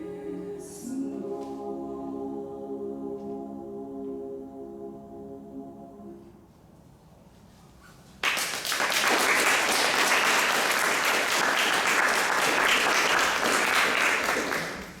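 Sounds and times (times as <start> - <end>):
audience applause: 8.2 - 15.0.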